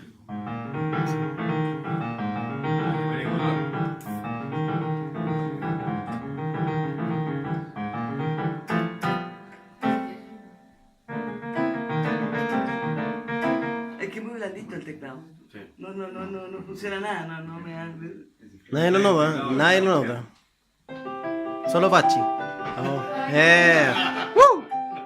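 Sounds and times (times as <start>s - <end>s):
electronic keyboard piano chords: 0.3s - 14.2s, 20.9s - 25.0s.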